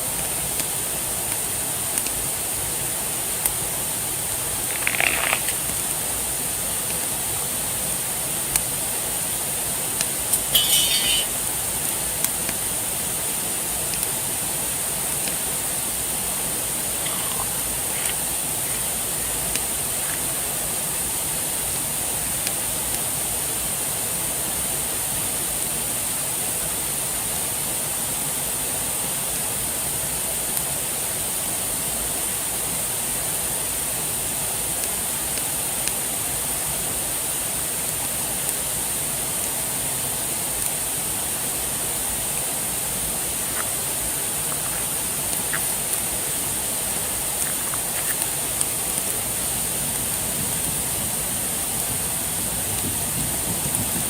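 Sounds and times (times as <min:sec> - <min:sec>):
flowing water rushing: 0:00.0 - 0:54.0
faint ticks: 0:00.2 - 0:02.3, 0:17.0 - 0:20.4, 0:43.6 - 0:46.1.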